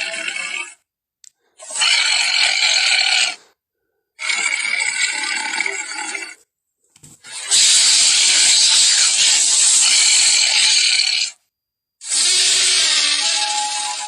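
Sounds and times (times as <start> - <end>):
cartoon dinosaur harsh calls: 12.0 - 14.0.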